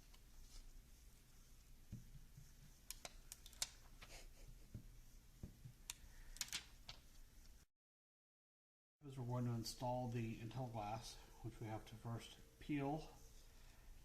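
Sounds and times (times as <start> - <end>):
sticker crackling on glass screen: 2.8 - 4.0.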